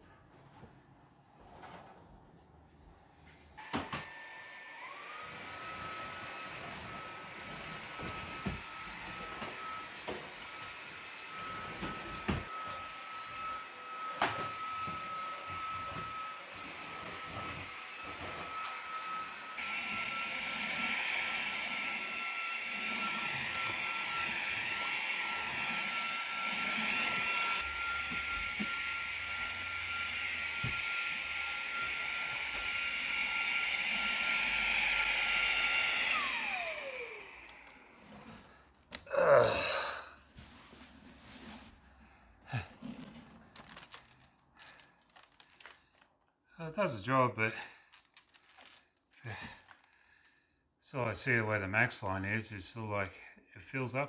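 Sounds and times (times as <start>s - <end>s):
stick vacuum motor whine: 3.6s - 38.6s.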